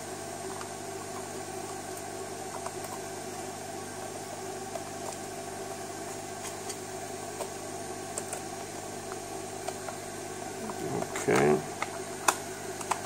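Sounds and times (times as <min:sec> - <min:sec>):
background hum: 0:00.0 - 0:13.0.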